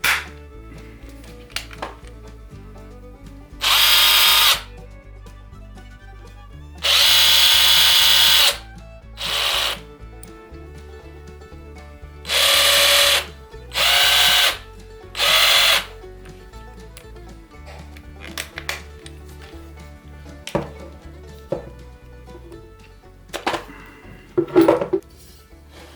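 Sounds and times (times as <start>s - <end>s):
cordless driver motor whirring: 3.6s - 4.7s, 6.8s - 8.6s, 9.2s - 9.8s, 12.3s - 14.6s, 15.2s - 15.9s.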